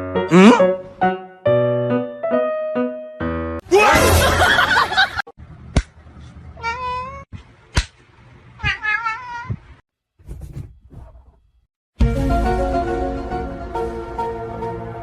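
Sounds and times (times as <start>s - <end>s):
cat meowing: 6.6s - 7.3s, 8.6s - 9.7s.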